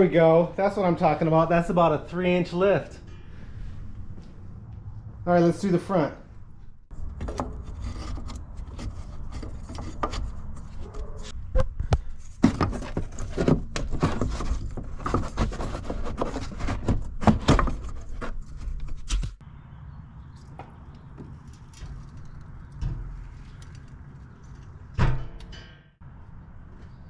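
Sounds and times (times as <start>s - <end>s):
steady low rumble: 1.5s - 7.1s.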